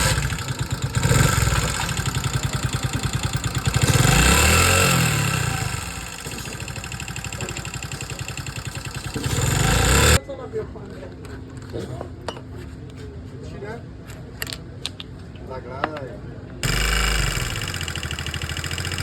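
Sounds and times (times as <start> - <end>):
motorcycle engine idling and revving: 0.0 - 10.2, 16.6 - 19.0.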